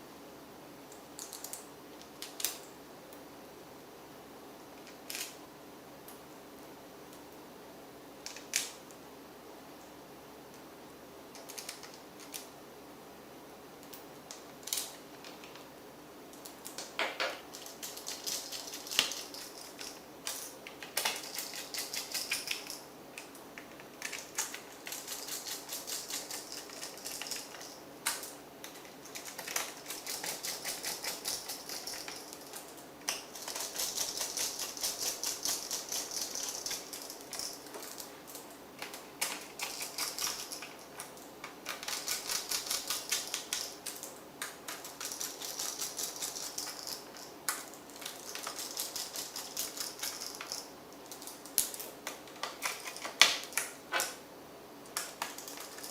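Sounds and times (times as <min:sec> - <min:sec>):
small clicks and ticks on laptop: 0:11.3 - 0:12.5, 0:17.6 - 0:38.1, 0:38.9 - 0:40.8, 0:41.6 - 0:53.7.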